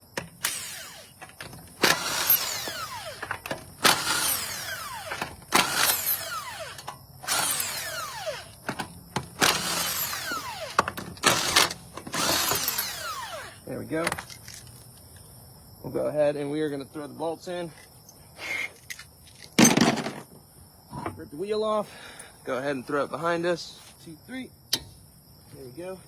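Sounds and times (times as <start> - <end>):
cordless power tool bursts: 0.2 - 13.8.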